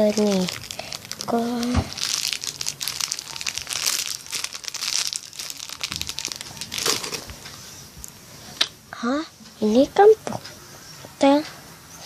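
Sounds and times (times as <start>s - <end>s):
wrapping crinkling: 0.0s - 7.5s.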